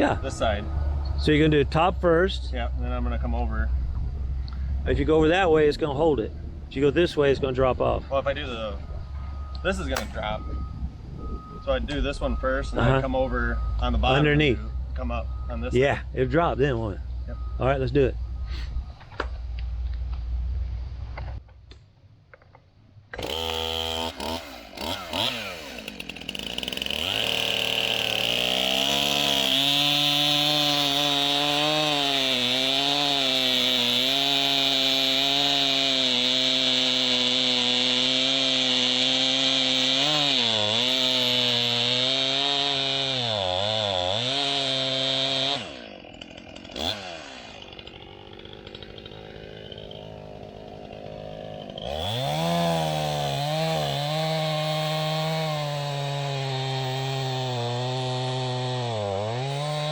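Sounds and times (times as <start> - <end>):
chainsaw cutting log: 9.7 - 10.3, 23.1 - 59.9.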